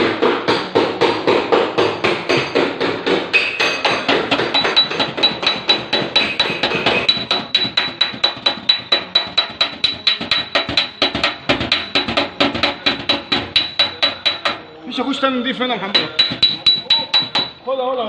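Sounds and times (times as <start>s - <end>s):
hammer tapping on sheet metal: 0.0s - 17.7s.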